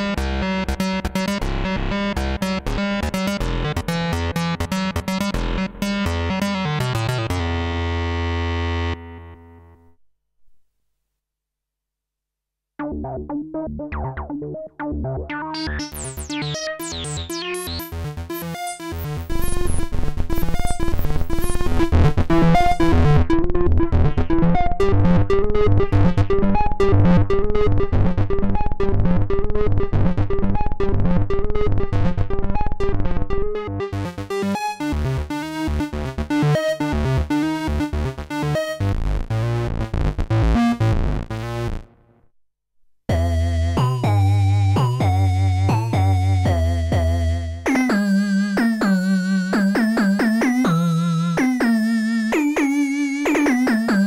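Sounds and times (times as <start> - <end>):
deep synth bass: 12.8 - 41.9, 43.1 - 47.7
synthesizer fast notes: 12.8 - 41.9, 43.1 - 54.0.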